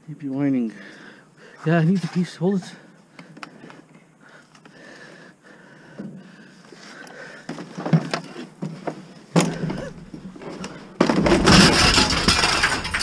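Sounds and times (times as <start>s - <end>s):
scrap scraping and rattling: 7.5s - 13.0s
scrap metal knocks: 9.4s - 13.0s.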